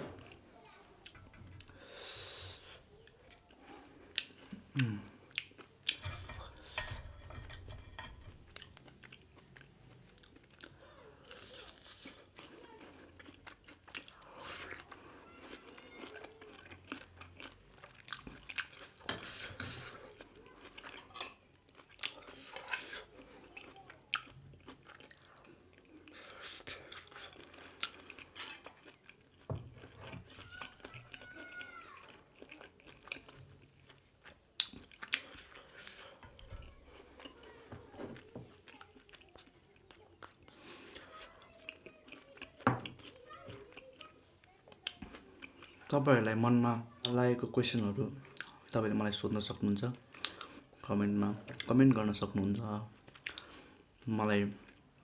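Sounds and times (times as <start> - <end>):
chewing and crunching: 2.6 - 46.0, 48.1 - 48.8, 49.4 - 55.0.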